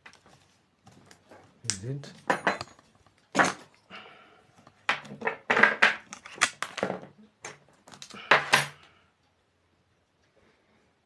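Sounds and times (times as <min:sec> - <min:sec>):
metal plates and bolts clinking: 0:02.2 - 0:03.6.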